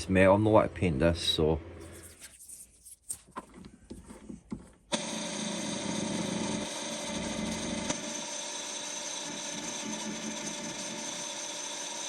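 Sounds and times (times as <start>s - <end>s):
electric power tool whining: 4.9s - 12.0s.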